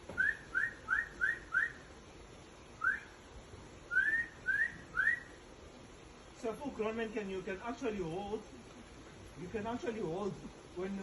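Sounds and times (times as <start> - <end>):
upward sliding whistled notes: 0.2 - 1.8, 3.9 - 5.3.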